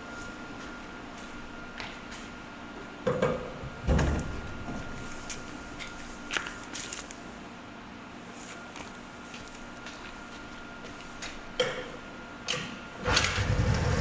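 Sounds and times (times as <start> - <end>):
scooter engine running: 13.1 - 14.0.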